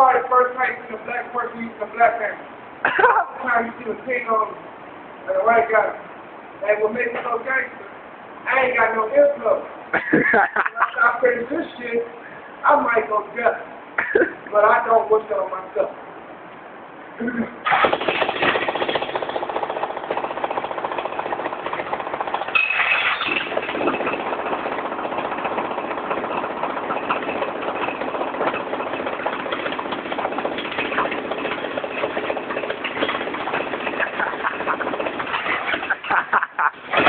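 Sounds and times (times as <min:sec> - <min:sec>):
jackhammer hammering: 0:17.7 - 0:37.0.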